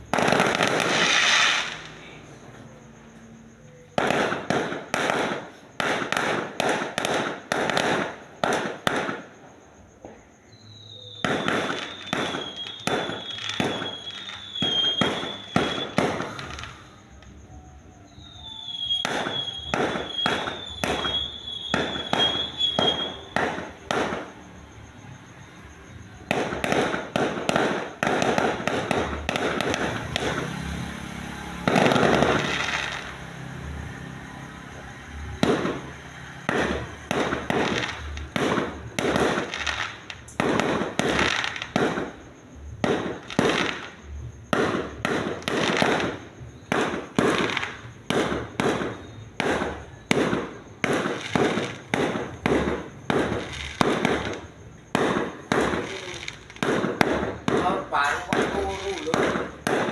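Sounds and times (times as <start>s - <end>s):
fireworks crackling: 0.0s - 59.9s
fireworks sharp bangs: 0.0s - 59.9s
high warbling whistle: 18.0s - 23.4s.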